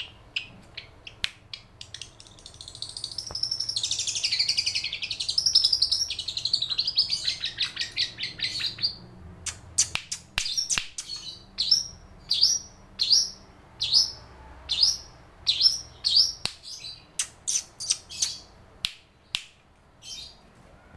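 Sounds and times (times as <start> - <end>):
bird chattering trill: 0.0 - 18.5
bird sharp calls: 0.0 - 18.5
sharp clicks: 9.4 - 11.3.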